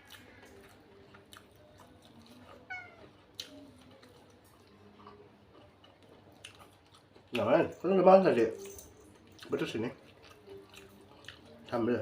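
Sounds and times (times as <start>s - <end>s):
cat meowing: 2.5s - 3.2s.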